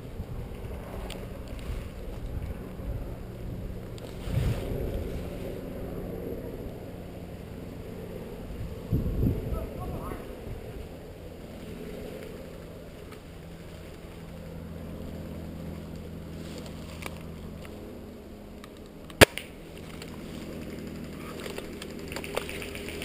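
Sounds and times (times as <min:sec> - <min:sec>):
steady low hum: 0:00.0 - 0:23.0
airsoft rifle firing: 0:19.2 - 0:19.6.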